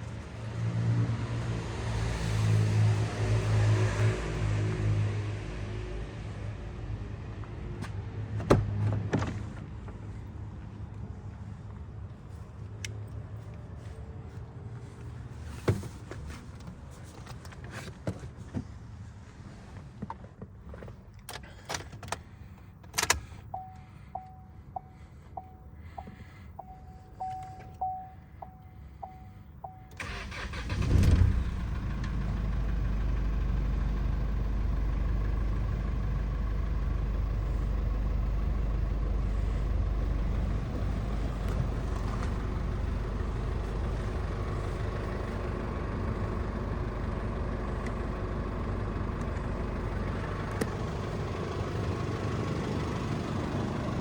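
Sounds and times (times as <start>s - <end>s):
engine cranking and idling: 21.1s - 54.0s
warning chime beeping: 23.5s - 30.0s.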